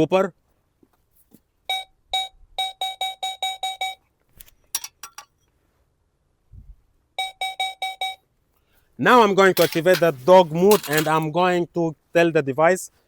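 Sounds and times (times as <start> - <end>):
metal detector electronic beeps: 1.7 - 4.0, 7.2 - 8.2.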